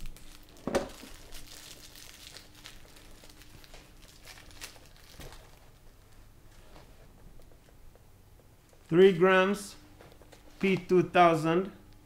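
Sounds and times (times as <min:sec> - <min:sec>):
packaging crinkling: 0:00.0 - 0:06.2.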